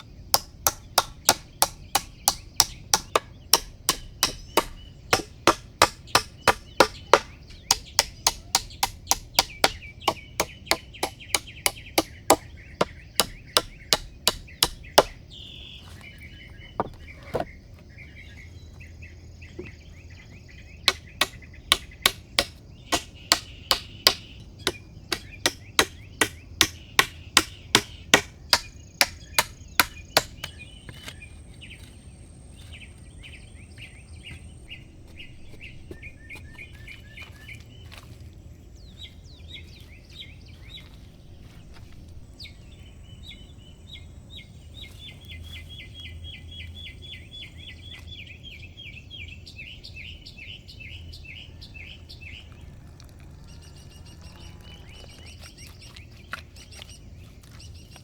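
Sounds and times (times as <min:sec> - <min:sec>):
hand tool striking wood: 0:00.0 - 0:15.2, 0:15.8 - 0:17.5, 0:20.9 - 0:31.2
small birds chirping: 0:00.0 - 0:58.0.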